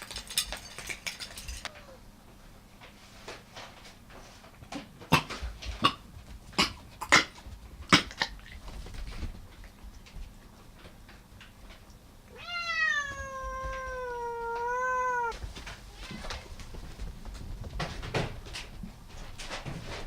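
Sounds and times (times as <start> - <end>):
cat meowing: 12.3 - 15.4.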